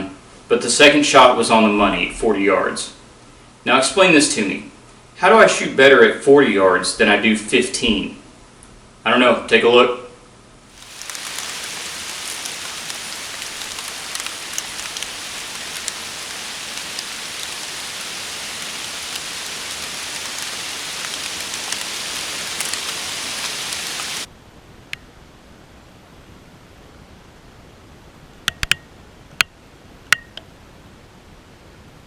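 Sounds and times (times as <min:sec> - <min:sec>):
rain-like pattering hiss: 0:10.7 - 0:24.3
small ticks: 0:10.8 - 0:24.3.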